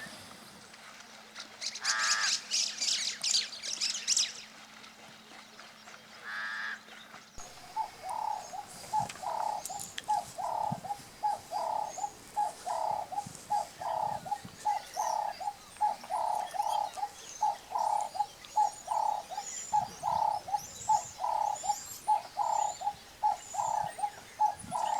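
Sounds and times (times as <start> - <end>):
bird calling low notes: 7.4 - 24.9
small birds chirping: 7.4 - 24.9.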